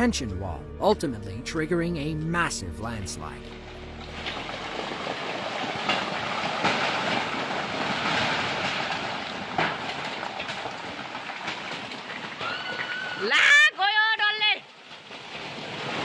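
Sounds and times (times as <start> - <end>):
earth and rubble rushing down: 4.0 - 13.2, 14.8 - 16.0.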